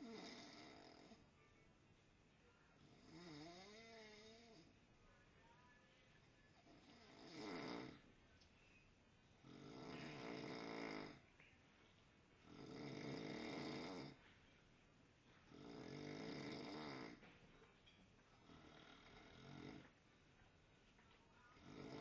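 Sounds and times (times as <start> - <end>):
man snoring: 0.0 - 1.2, 2.9 - 4.7, 6.8 - 8.0, 9.4 - 11.2, 12.4 - 14.2, 15.5 - 17.2, 18.4 - 19.8, 21.6 - 22.0
quiet breathing: 2.4 - 22.0.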